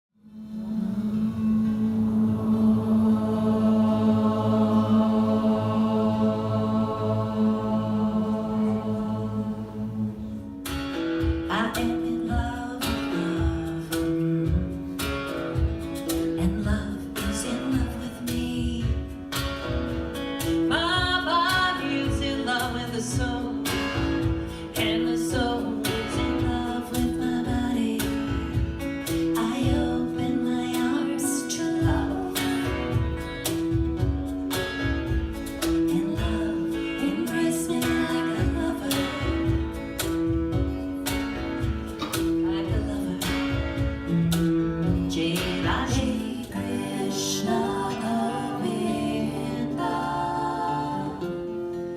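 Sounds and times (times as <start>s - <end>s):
person singing: 0.2s - 15.4s, 16.0s - 19.2s, 20.4s - 33.8s, 35.6s - 40.4s, 41.3s - 51.7s
strummed acoustic guitar: 10.2s - 51.9s
percussion beat: 10.7s - 30.2s, 31.8s - 46.3s.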